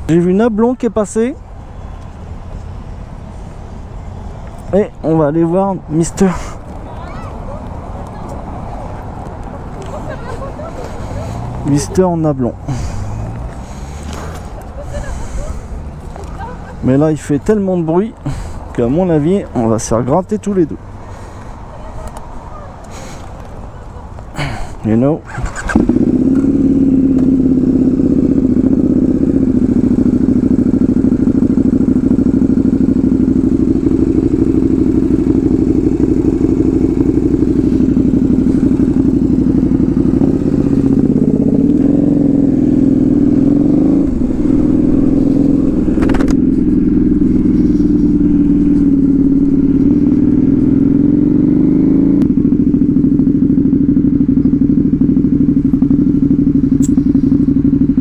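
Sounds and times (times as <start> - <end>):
motorcycle engine idling: 25.3 - 58.0
sharp click: 56.8 - 57.0.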